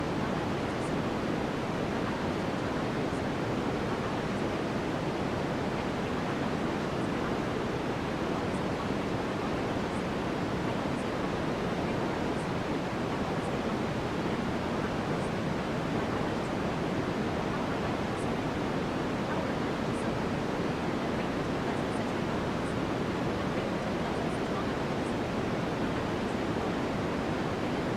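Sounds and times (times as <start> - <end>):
white noise hiss: 0.0 - 27.9.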